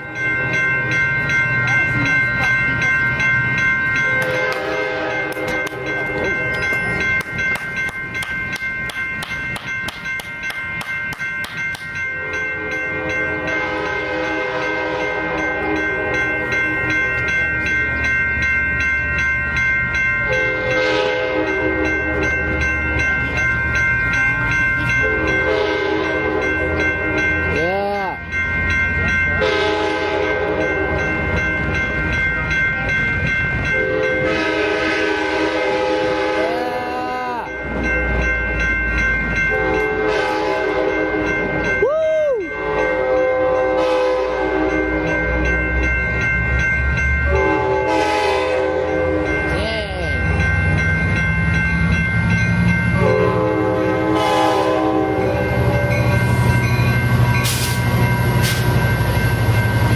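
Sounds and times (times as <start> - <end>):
low train rumble: 0.0 - 59.9
train air horn blasts: 4.4 - 5.4, 12.6 - 15.8, 20.6 - 21.8, 25.4 - 26.1, 29.4 - 30.6, 33.8 - 36.5, 39.6 - 41.0, 42.7 - 44.8, 47.4 - 49.2, 53.0 - 55.4.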